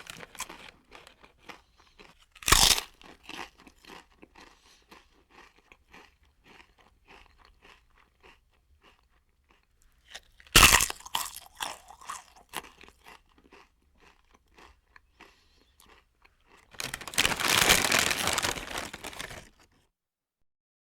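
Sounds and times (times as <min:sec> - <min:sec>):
crisp bite into chip: 0:00.0 - 0:04.5, 0:15.8 - 0:19.6
chewing crunches: 0:00.0 - 0:19.8
loud dense crackling: 0:16.8 - 0:19.4.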